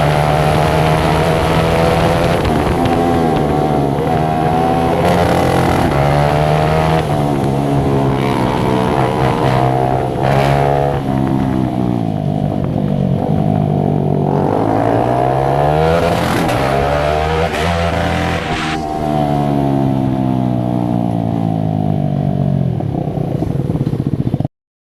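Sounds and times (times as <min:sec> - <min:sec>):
single-cylinder motorcycle engine: 0:19.2 - 0:24.5.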